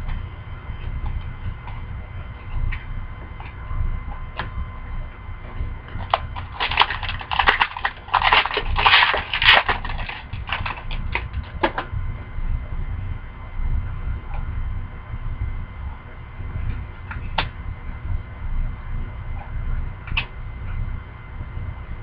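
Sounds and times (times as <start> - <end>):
steady low hum: 0.0 - 22.0
wrapper crackling: 6.0 - 11.3.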